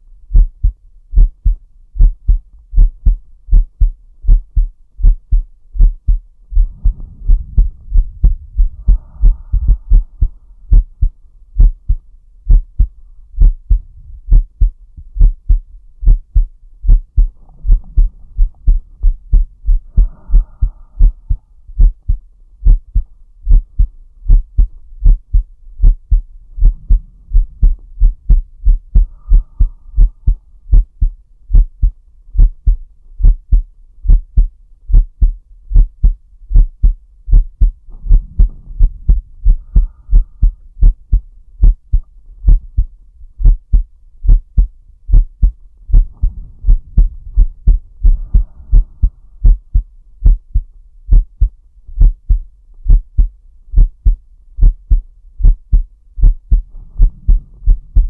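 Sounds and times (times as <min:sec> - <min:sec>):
heartbeat thumps: 0:00.3 - 0:58.0
soft slow breaths: 0:00.3 - 0:58.0.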